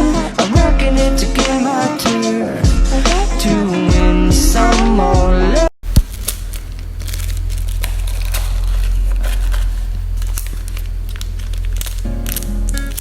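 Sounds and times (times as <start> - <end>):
plastic packaging crinkling: 5.8 - 13.0
steady low hum: 5.8 - 13.0.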